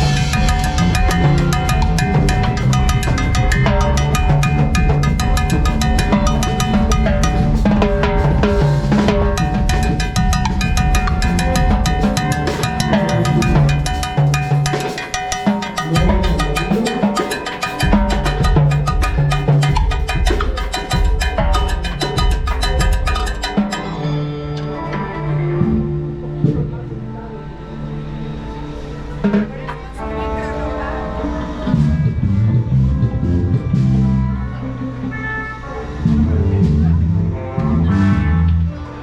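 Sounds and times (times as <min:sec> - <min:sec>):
drum kit rhythm: 0:00.0 - 0:24.1
live band playing: 0:00.0 - 0:27.2.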